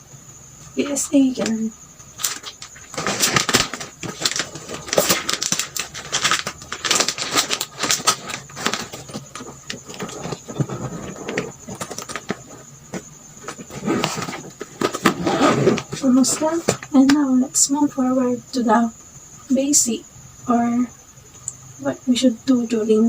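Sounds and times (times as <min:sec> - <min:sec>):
rustling and crinkling: 0:00.7 - 0:17.2.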